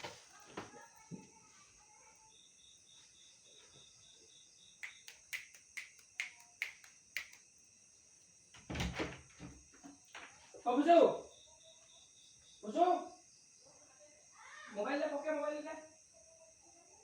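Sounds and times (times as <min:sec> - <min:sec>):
crickets chirring: 0:00.0 - 0:17.0
quick sharp clicks: 0:04.8 - 0:07.4.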